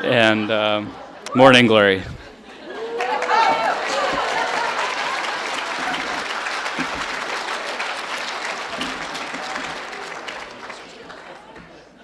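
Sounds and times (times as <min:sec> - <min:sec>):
audience applauding: 0:02.7 - 0:11.8.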